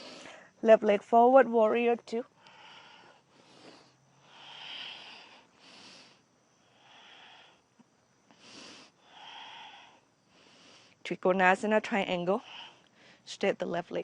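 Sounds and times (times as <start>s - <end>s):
person breathing deeply: 0.0s - 0.6s, 2.4s - 7.7s, 8.3s - 11.0s.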